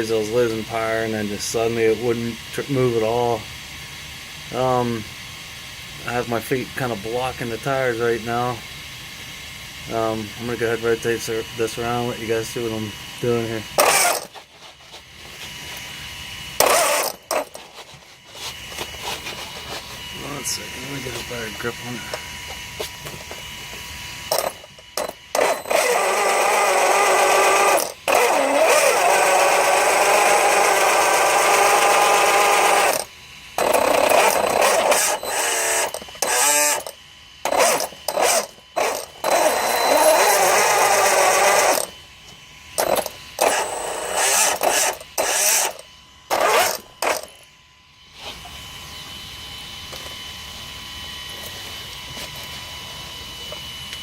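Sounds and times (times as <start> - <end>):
electric motor whining and grinding: 9.9 - 54.0.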